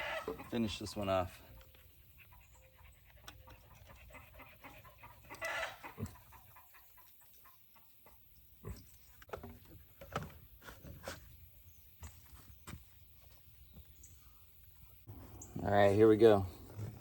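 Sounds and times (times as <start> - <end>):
chicken clucking: 0.0 - 8.3.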